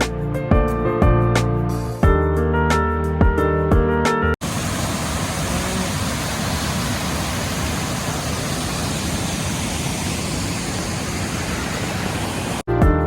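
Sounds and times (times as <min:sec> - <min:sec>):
waterfall rushing: 0:04.4 - 0:12.7.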